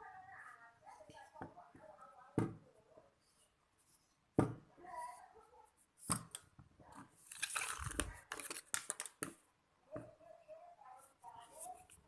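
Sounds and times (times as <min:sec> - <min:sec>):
rustling and crinkling handling: 0:05.0 - 0:09.4.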